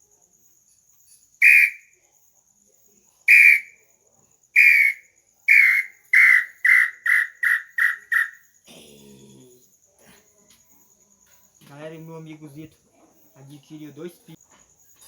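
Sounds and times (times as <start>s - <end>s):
bird-call whistle notes: 1.4s - 1.9s, 3.3s - 3.8s, 4.6s - 8.4s.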